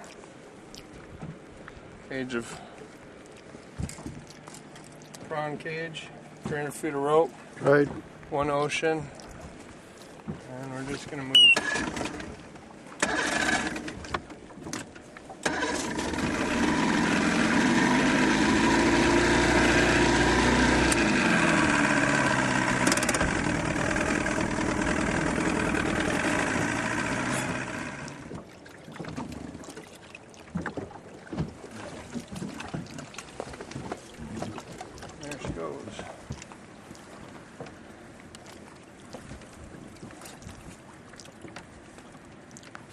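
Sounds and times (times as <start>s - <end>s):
boat motor revving: 11.4s - 12.4s, 13.0s - 14.1s, 15.4s - 28.4s.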